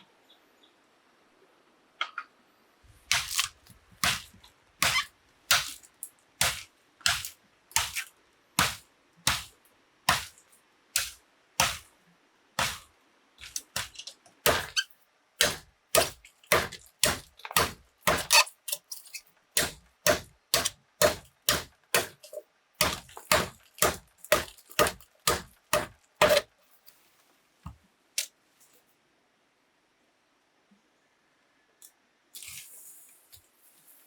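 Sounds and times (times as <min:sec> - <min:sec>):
hand tool striking bamboo: 0:03.1 - 0:05.8, 0:06.4 - 0:09.5, 0:10.1 - 0:10.4, 0:11.0 - 0:11.9, 0:12.6 - 0:14.8, 0:15.4 - 0:18.8, 0:19.6 - 0:26.5.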